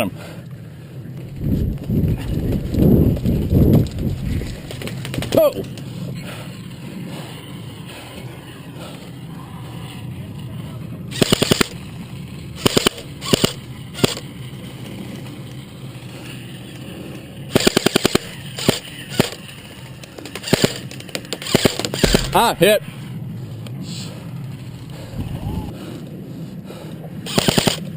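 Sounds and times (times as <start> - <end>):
airsoft rifle firing: 11.1 - 11.8, 12.6 - 14.2, 17.5 - 19.4, 20.4 - 22.7, 27.3 - 27.8.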